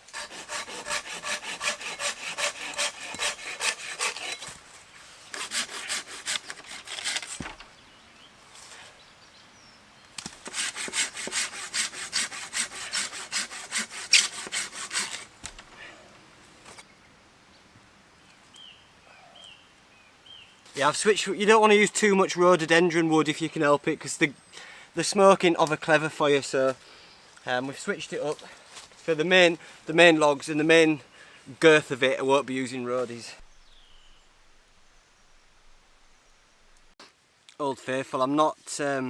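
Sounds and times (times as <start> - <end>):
hand saw cutting firewood: 0.0 - 4.6, 5.3 - 7.6, 10.2 - 15.3.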